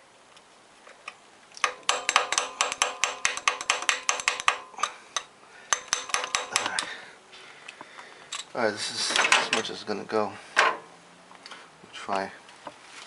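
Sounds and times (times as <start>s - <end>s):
hammer tapping metal punch: 1.6s - 7.0s.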